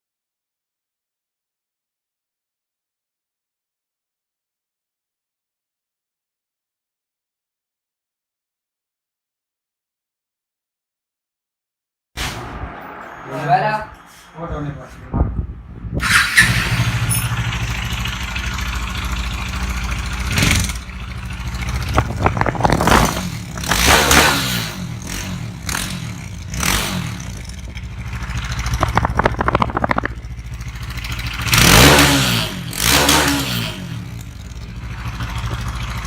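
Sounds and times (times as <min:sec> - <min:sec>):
motorcycle engine revving: 0:15.7 - 0:36.0.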